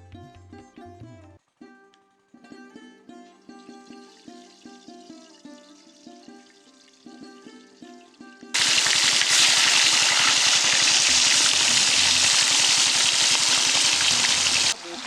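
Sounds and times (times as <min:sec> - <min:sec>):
plucked-string background music: 0:00.0 - 0:10.5
loud steady hiss: 0:08.6 - 0:15.0.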